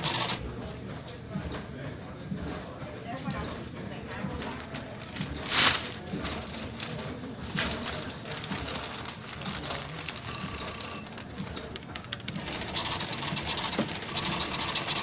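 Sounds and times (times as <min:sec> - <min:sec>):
cash register keys clicking: 0:00.0 - 0:00.5, 0:07.6 - 0:15.0
till bell ringing: 0:12.6 - 0:15.0.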